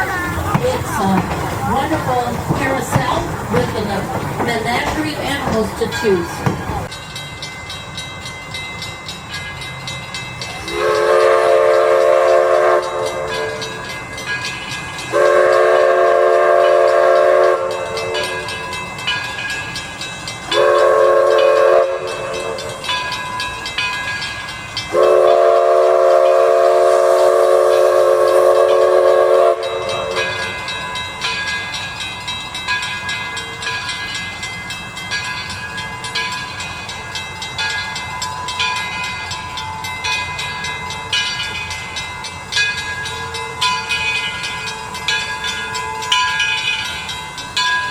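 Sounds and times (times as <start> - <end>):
train clattering: 0.0 - 47.9
steam whistle blasts: 10.6 - 13.7, 15.1 - 18.4, 20.5 - 22.7, 24.9 - 30.4.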